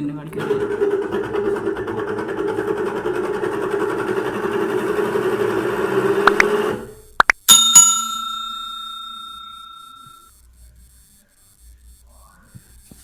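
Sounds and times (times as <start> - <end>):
washing machine grating hum: 0.0 - 11.0
sharp metallic ring: 7.5 - 10.3.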